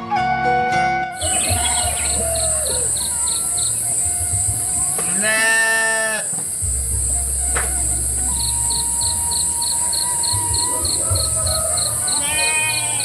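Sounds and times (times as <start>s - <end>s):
high insect buzz: 1.2s - 13.0s
livestock bleat: 5.0s - 6.4s, 12.1s - 13.0s.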